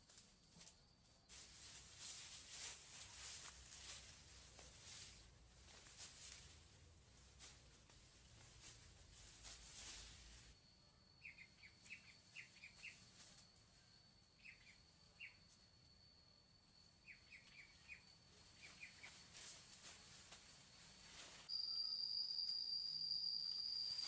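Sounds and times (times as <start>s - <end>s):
rustling noise: 0.0s - 10.6s, 18.5s - 21.5s
thin high whine: 1.3s - 24.0s
small birds chirping: 11.1s - 13.3s, 14.3s - 15.5s, 17.0s - 19.6s.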